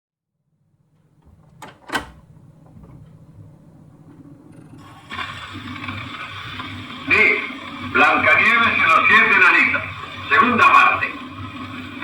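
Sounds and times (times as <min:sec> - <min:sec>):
low hum: 0:00.6 - 0:09.2
recording hiss: 0:00.7 - 0:12.0.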